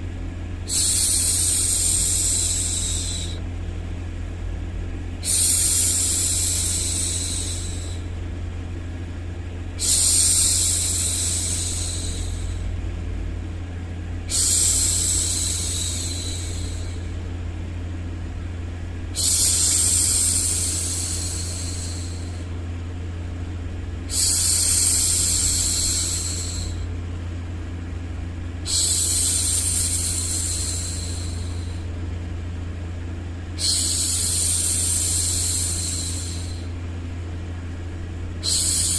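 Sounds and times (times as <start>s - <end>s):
steady low hum: 0.0s - 38.9s
woman shushing: 0.7s - 3.4s, 9.8s - 12.6s, 14.3s - 17.0s, 38.4s - 38.9s.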